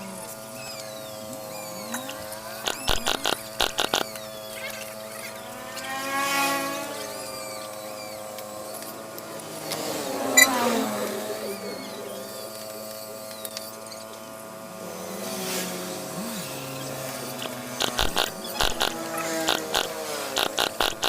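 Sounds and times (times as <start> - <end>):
two-stroke engine revving and idling: 0.0 - 21.0
sharp knocks or clicks: 2.6 - 4.1, 17.8 - 21.0.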